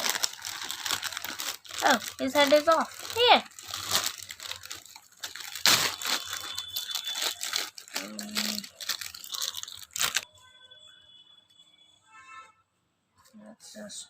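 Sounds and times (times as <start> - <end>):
plastic packaging crinkling: 0.0 - 10.3.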